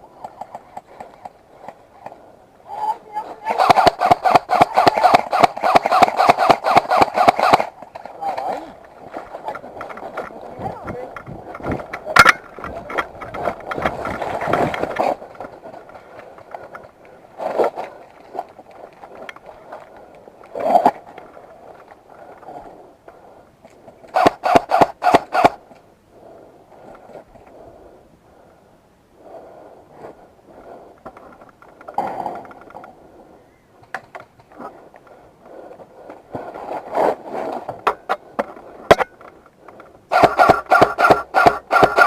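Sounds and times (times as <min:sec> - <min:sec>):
rustling and scraping through brush: 0:00.0 - 0:22.8, 0:33.8 - 0:42.0
airsoft guns firing: 0:03.5 - 0:08.5, 0:24.1 - 0:25.6, 0:40.1 - 0:42.0.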